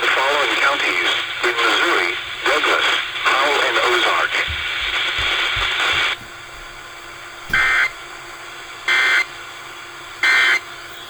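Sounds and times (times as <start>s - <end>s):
warbling two-tone data bursts: 7.5s - 8.0s.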